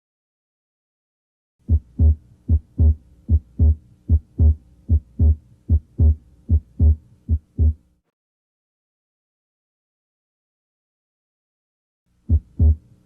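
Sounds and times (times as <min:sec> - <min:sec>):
heartbeat lub-dub: 0:01.7 - 0:07.8, 0:12.3 - 0:12.8.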